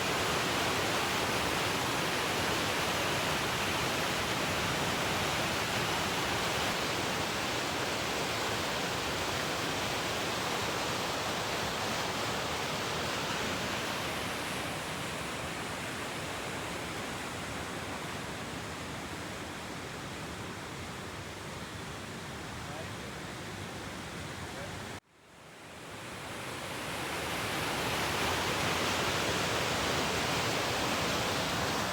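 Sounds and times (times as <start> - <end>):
waterfall rushing: 26.1 - 31.9.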